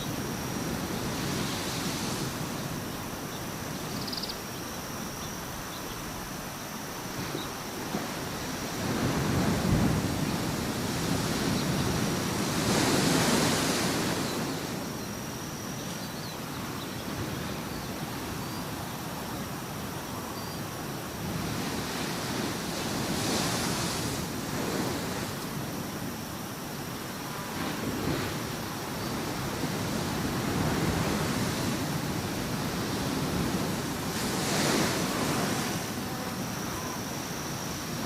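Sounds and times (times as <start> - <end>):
sea waves breaking: 5.5 - 15.3, 20.7 - 38.0.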